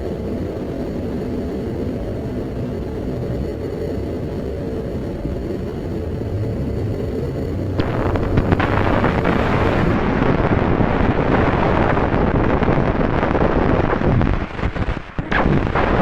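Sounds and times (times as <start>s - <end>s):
loud steady roaring noise: 0.0s - 16.0s.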